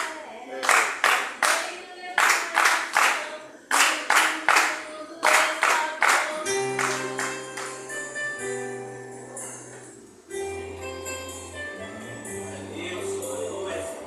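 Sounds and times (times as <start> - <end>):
hand clapping: 0.0 - 8.0
faint singing: 0.0 - 14.0.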